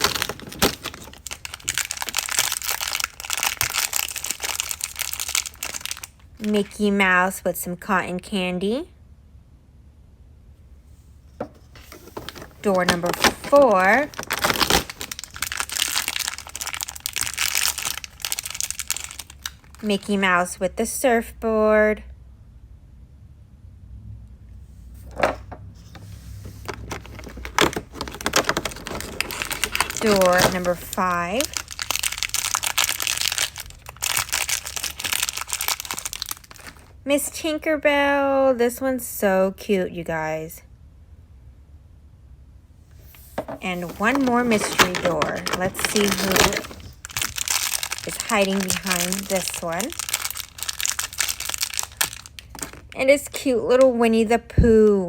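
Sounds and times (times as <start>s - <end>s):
plastic packaging crinkling: 0.0s - 6.8s, 11.5s - 20.1s, 25.2s - 36.9s, 43.1s - 53.0s.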